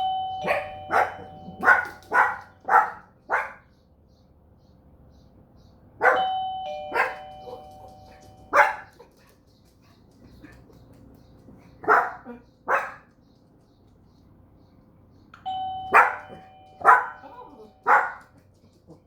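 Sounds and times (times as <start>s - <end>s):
two-note doorbell chime: 0.0s - 2.0s, 6.1s - 8.6s, 15.4s - 17.9s
dog barking: 0.4s - 3.7s, 6.0s - 7.8s, 8.5s - 9.0s, 11.8s - 13.1s, 15.9s - 18.4s.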